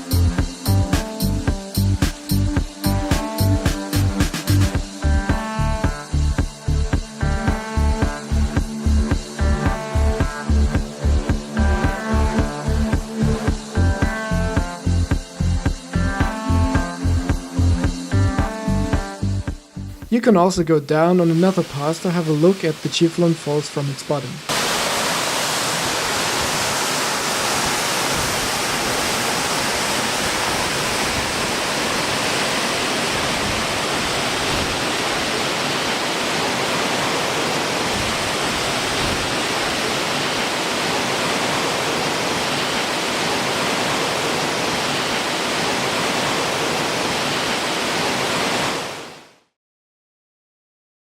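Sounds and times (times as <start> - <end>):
waterfall roaring: 20.1 - 49.3.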